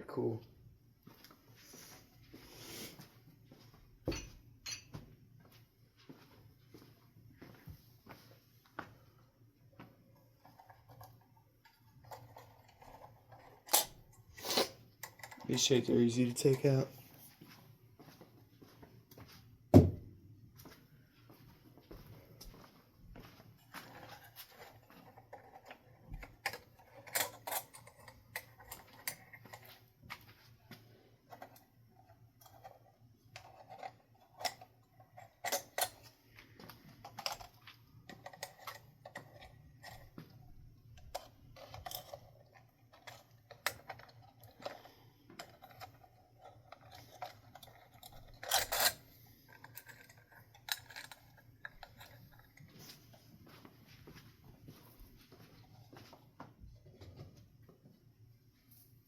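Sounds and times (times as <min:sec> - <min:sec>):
fan parts clicking and tapping: 0:23.6 - 0:53.2.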